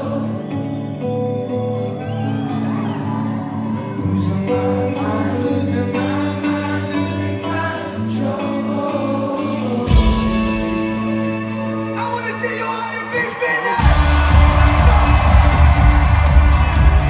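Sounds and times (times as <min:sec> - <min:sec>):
person singing: 0:00.0 - 0:01.9, 0:02.6 - 0:17.0
live rock band: 0:00.0 - 0:17.0
heavy low drum hit: 0:13.8 - 0:17.0.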